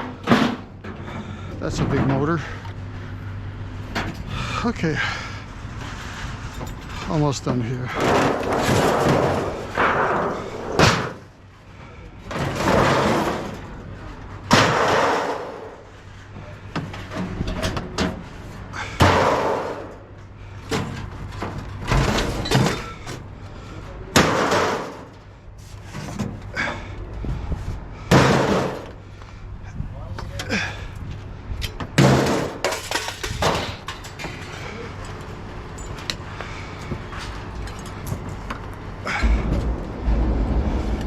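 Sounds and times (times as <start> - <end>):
scrap metal crashing onto pile: 7.9 - 11.2, 12.4 - 13.7, 14.5 - 15.8, 24.2 - 25.1, 28.1 - 28.9, 32.0 - 34.5, 39.1 - 41.0.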